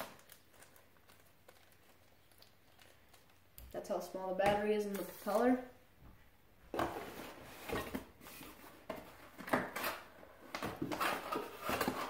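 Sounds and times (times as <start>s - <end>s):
packaging clicks and rustles: 0.0s - 3.6s.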